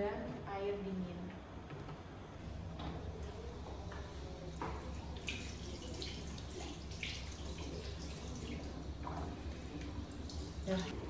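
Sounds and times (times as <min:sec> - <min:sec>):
low steady hum: 0:00.0 - 0:11.0
hands washing water splashes: 0:02.8 - 0:10.9.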